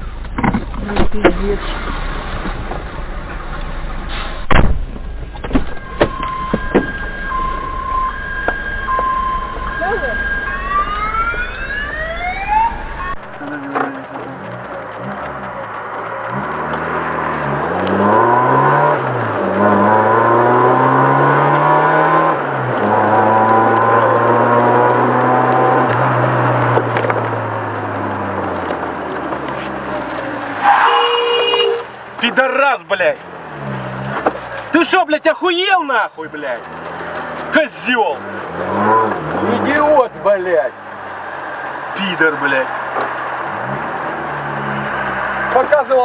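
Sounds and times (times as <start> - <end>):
car vehicle noise: 0.0 - 46.0.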